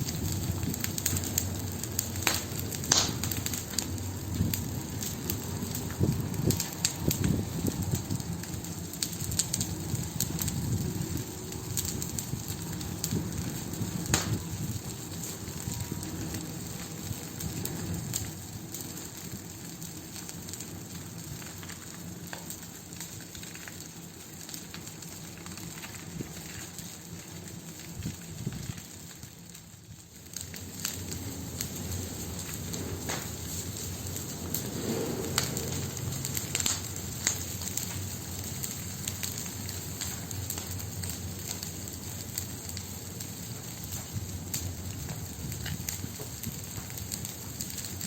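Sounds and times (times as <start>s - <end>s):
hiss of flames: 0.0s - 48.0s
wood fire crackling: 0.0s - 48.0s
sharp pops and snaps: 2.2s - 4.6s, 14.1s - 14.5s.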